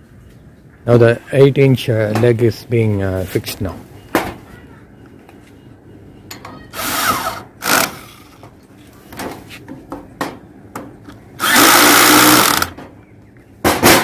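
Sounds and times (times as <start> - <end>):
loud steady noise with low hum: 5.0 - 14.0.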